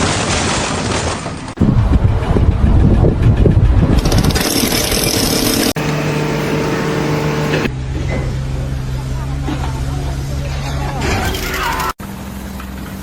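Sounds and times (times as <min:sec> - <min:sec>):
steady engine hum: 0:01.6 - 0:11.0
engine rough low rumble: 0:01.6 - 0:13.0.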